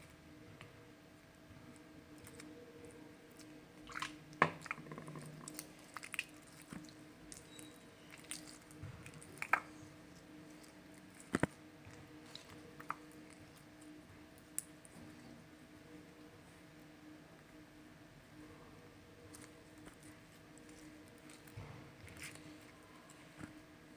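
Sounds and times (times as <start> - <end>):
slime squishing and popping: 3.9 - 9.8.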